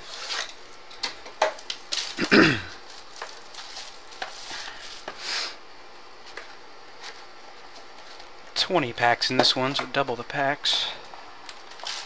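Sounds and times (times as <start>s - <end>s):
plastic wrap crinkling: 1.6s - 5.1s, 11.4s - 12.0s.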